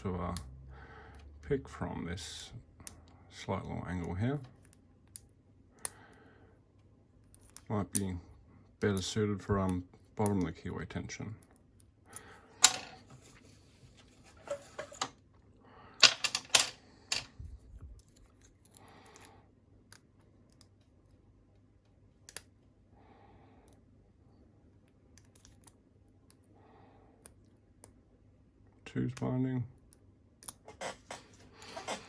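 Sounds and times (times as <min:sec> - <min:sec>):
quiet scratching: 0:12.7 - 0:15.1, 0:30.6 - 0:32.0.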